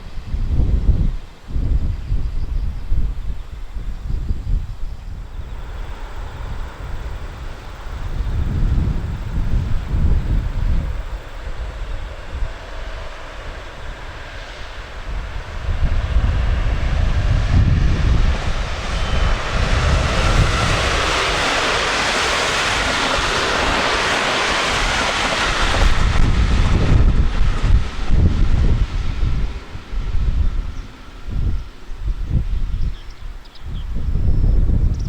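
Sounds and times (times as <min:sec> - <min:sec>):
wind rumbling on microphone: 0:00.0 - 0:35.0
train passing rushing noise: 0:05.0 - 0:34.9.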